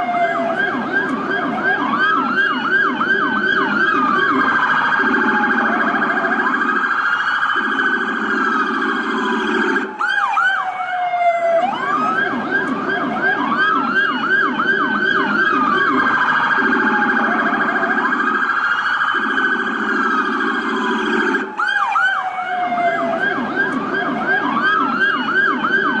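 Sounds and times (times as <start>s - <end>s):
police sirens wailing and yelping: 0.0s - 26.0s.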